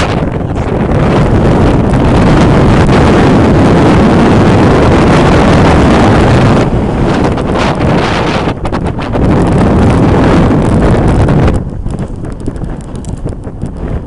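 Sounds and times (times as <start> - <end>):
gusty wind on microphone: 0.0 - 14.0.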